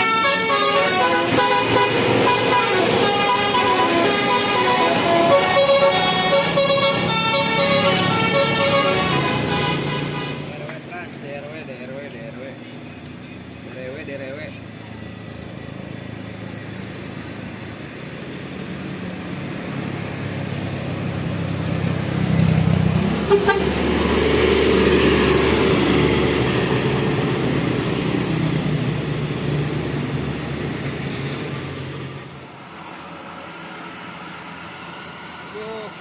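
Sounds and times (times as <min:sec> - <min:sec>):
bus horn: 0:00.0 - 0:10.7, 0:23.0 - 0:26.3
bus passing: 0:00.0 - 0:36.0.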